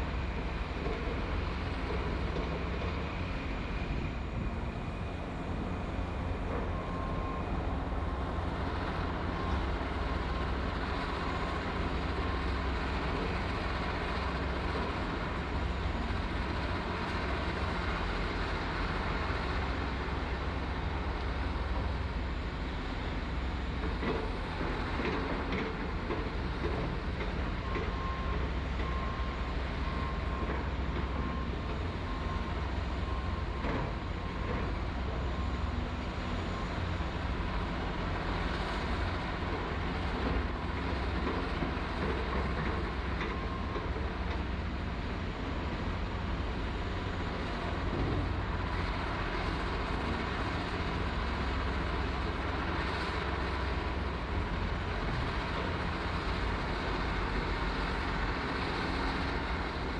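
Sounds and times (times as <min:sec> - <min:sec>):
heavy diesel machinery running: 0:00.0 - 0:59.9.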